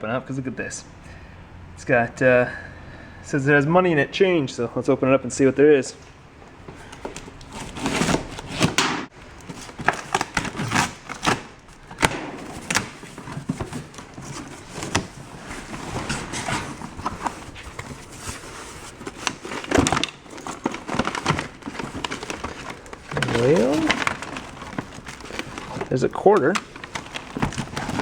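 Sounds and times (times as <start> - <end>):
cardboard box rustling: 6.6 - 28.0.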